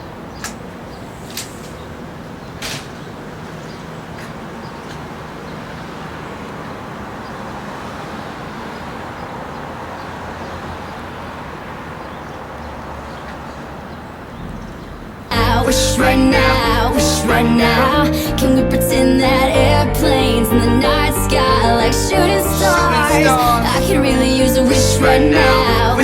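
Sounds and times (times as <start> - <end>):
distant vehicle engine drone: 0.0 - 26.0.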